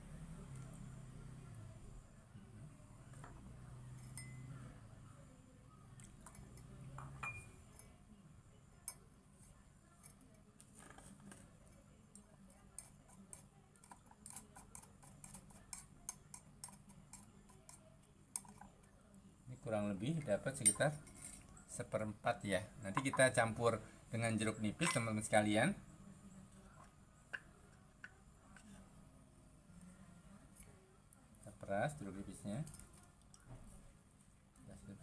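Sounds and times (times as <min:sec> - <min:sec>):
utensils clinking against glass: 0:06.2 - 0:07.9, 0:20.4 - 0:21.6, 0:22.2 - 0:25.7.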